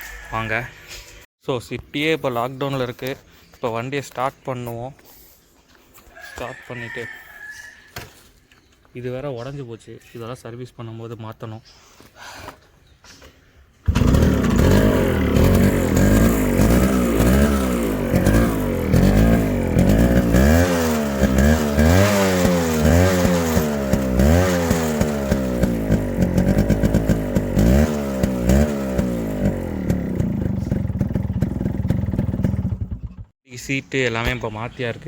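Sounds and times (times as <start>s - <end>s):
motorcycle engine revving: 13.8s - 33.3s.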